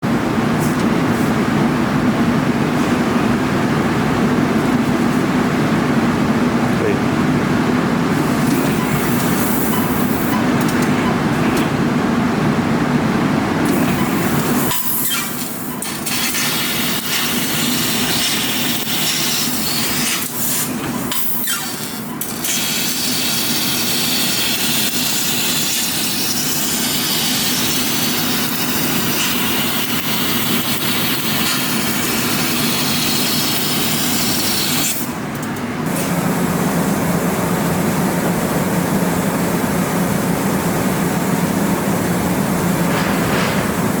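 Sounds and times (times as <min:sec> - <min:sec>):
laser cutter hissing: 0:08.3 - 0:10.4, 0:13.7 - 0:35.1.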